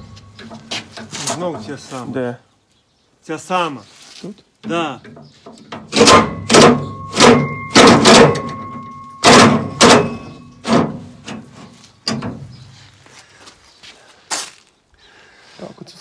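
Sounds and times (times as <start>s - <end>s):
hammer striking steel: 5.9s - 11.0s.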